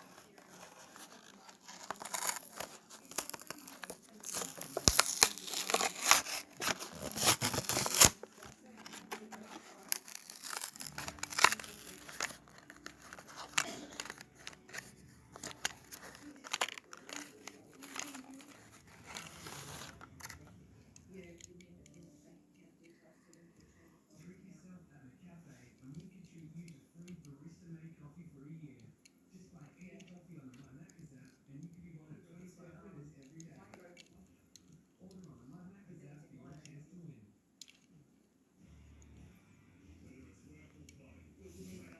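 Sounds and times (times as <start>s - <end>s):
cardboard tearing: 0.0s - 20.5s
plastic crinkling: 0.0s - 20.5s.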